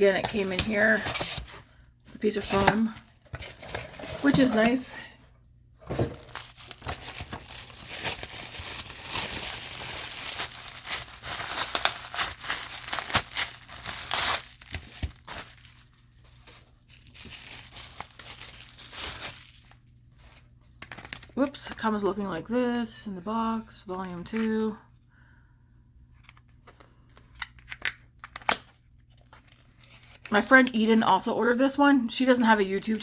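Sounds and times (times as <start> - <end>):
packaging crinkling and rustling: 0.1 - 4.9, 5.8 - 21.6, 26.2 - 30.8
packaging tearing: 6.2 - 19.8.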